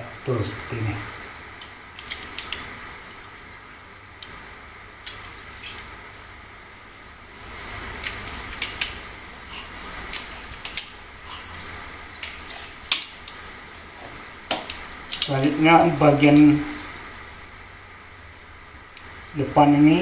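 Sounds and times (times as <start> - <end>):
short hisses: 7.0 - 8.0, 9.4 - 10.1, 11.2 - 11.7.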